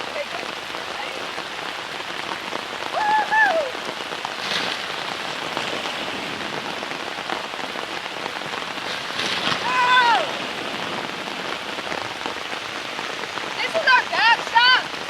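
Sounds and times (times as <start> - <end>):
hard rain falling: 0.0 - 15.0
person whooping shout: 2.9 - 3.8, 9.6 - 10.4.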